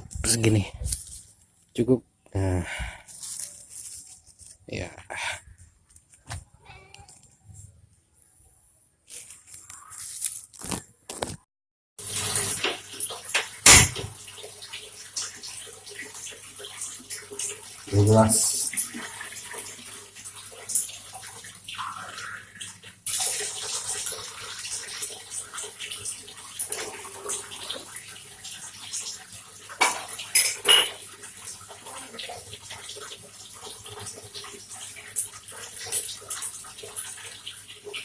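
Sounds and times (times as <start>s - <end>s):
tap water running: 12.0s - 38.0s
glass and pots clinking: 29.8s - 31.1s.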